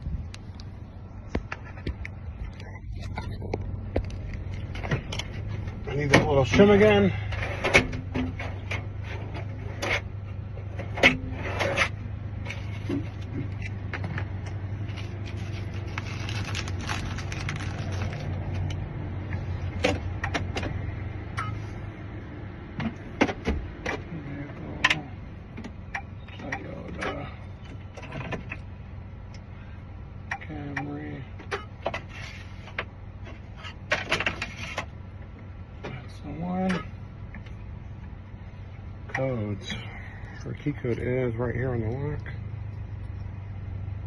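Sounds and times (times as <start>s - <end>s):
low hum: 0.0s - 30.4s.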